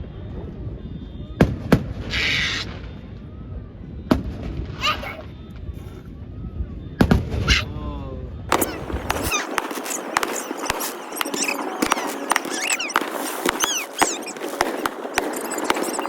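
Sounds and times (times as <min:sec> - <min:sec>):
fireworks pops and crackles: 0:01.4 - 0:03.2, 0:07.0 - 0:07.5, 0:08.5 - 0:16.0
high squealing firework whistles: 0:02.0 - 0:03.2, 0:04.7 - 0:05.4, 0:08.5 - 0:16.0.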